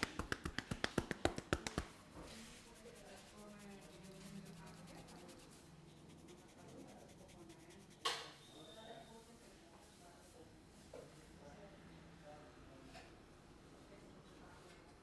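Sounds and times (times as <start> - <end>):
short sharp snap: 0.0 - 2.0
hands rubbing hair: 0.0 - 8.0.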